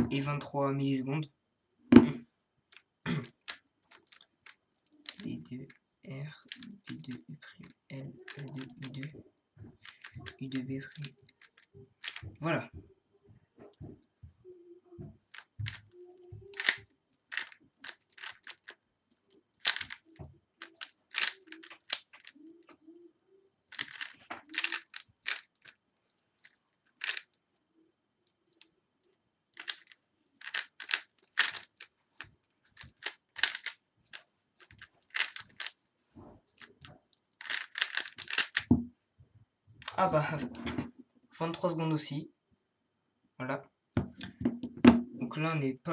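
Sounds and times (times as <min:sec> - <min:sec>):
puzzle cube plastic clicking: 0:02.7 - 0:05.4, 0:06.4 - 0:09.2, 0:09.8 - 0:12.4, 0:15.3 - 0:22.8, 0:23.7 - 0:27.6, 0:28.3 - 0:35.8, 0:36.5 - 0:38.7.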